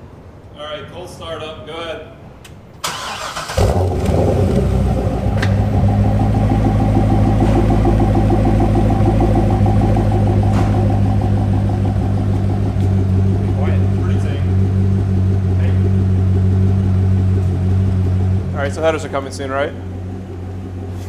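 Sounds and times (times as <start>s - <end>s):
starter motor cranking: 2.8s - 4.5s
car engine idling loudly: 3.6s - 21.0s.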